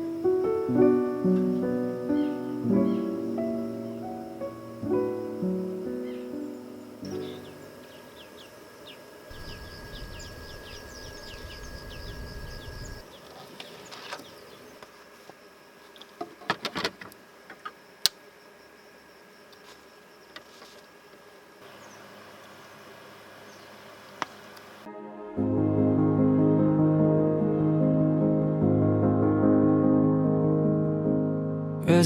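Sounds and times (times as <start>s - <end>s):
insect buzz: 0.0s - 24.9s.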